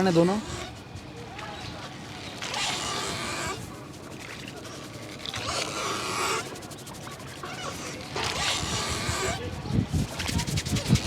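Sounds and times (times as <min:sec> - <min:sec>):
hands rubbing hair and scalp: 0:02.6 - 0:11.0.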